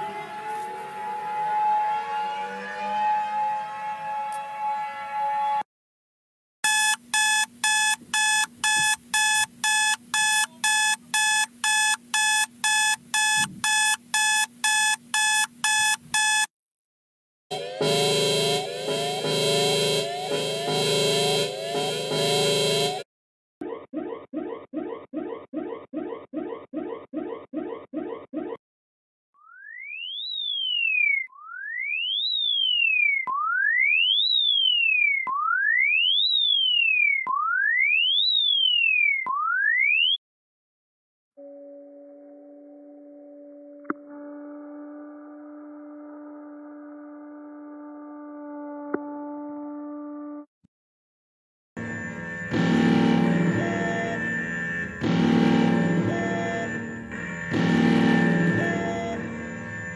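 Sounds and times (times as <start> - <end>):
rapid alarm beeps: 6.6 - 16.5, 17.8 - 23.0, 51.8 - 59.9.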